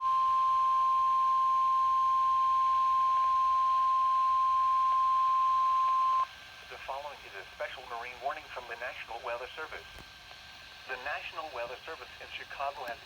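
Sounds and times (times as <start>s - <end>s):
long loud alarm beep: 0.0s - 6.3s.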